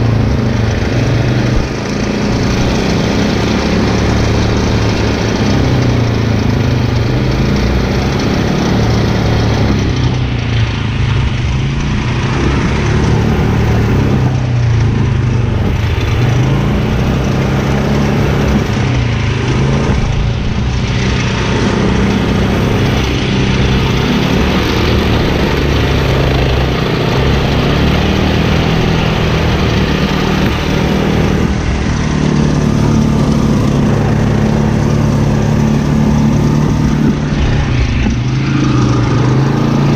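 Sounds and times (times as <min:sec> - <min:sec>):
brush mower engine cutting grass: 0:00.0 - 0:39.9.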